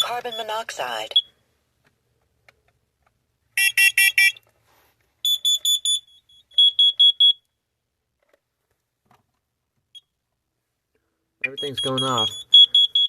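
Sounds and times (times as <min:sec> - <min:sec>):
buzzy alarm beeps: 0:00.0 - 0:01.3, 0:05.3 - 0:07.4, 0:11.4 - 0:13.0
high piercing alarm beeps: 0:00.0 - 0:01.3, 0:05.2 - 0:07.4, 0:11.4 - 0:13.0.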